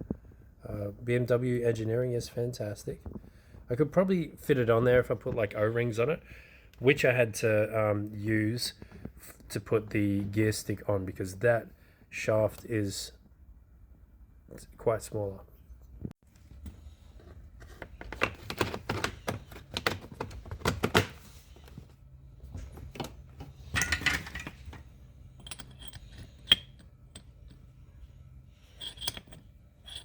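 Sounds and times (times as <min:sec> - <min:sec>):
metal parts and tools clinking: 0:22.8 - 0:30.0.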